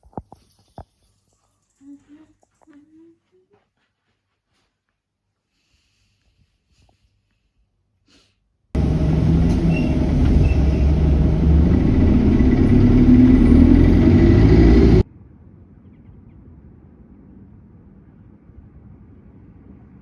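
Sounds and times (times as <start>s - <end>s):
vehicle engine running loudly: 8.8s - 15.0s.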